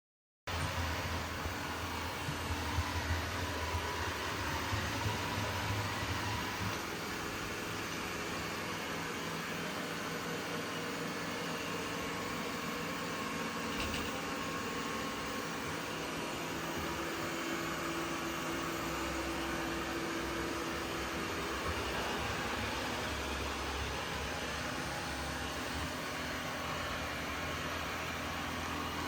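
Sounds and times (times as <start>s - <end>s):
robot vacuum whirring: 0.6s - 19.5s.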